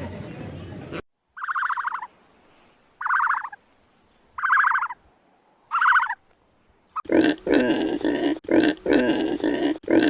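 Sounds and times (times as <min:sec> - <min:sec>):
animal pulsed call: 0:01.4 - 0:02.1, 0:03.0 - 0:03.6, 0:04.4 - 0:05.0, 0:05.7 - 0:06.2.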